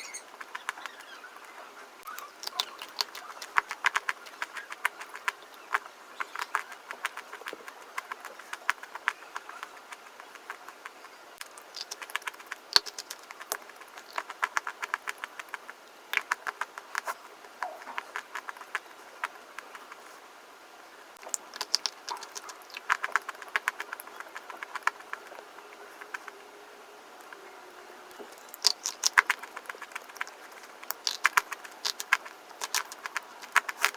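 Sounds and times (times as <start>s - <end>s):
crisp crunching: 28.1s - 33.9s.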